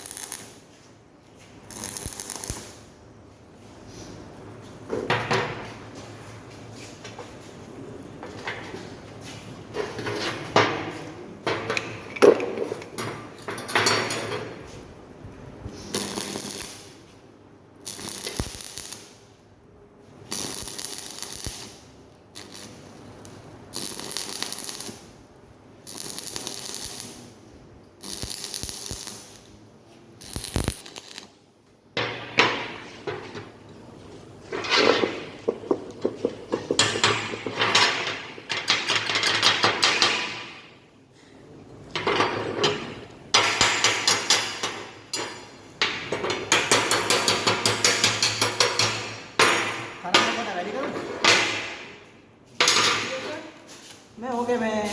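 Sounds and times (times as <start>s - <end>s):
arc welding crackling hiss: 0.0s - 0.9s, 1.6s - 3.0s, 15.6s - 19.5s, 20.1s - 31.4s.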